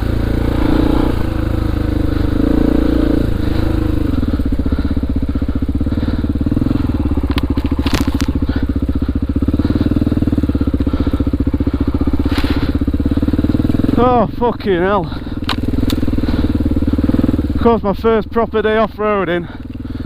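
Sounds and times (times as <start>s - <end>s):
motorcycle engine revving and idling: 0.0s - 20.0s
sharp clicks: 15.4s - 16.1s.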